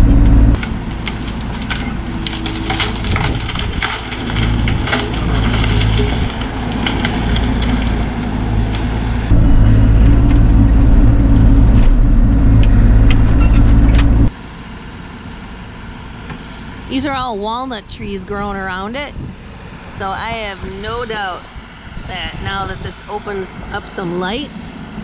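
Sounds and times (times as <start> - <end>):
mini excavator diesel engine: 0.0 - 25.0
dead wood cracking: 0.6 - 9.4.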